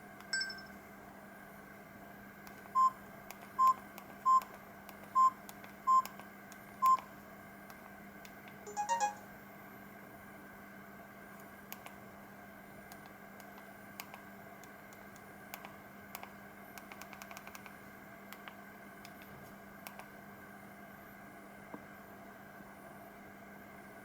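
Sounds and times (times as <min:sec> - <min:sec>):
low steady hum and hiss: 0:00.0 - 0:24.0
phone keypad button clicks: 0:08.7 - 0:09.2.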